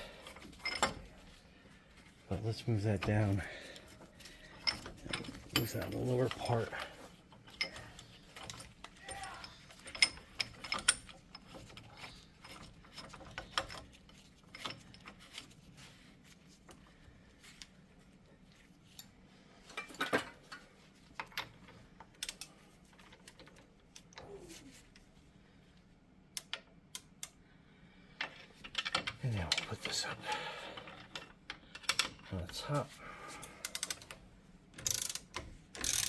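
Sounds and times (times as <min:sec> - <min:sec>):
metal hand tools clanking: 0:04.4 - 0:08.7.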